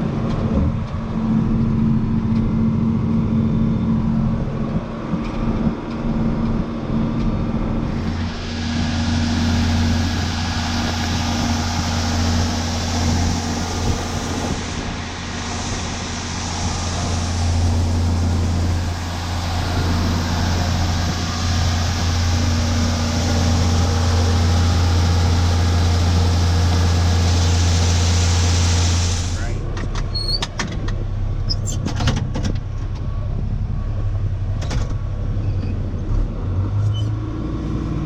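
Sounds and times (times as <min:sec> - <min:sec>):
diesel engine droning: 0:00.0 - 0:38.0
machinery noise: 0:07.7 - 0:29.8.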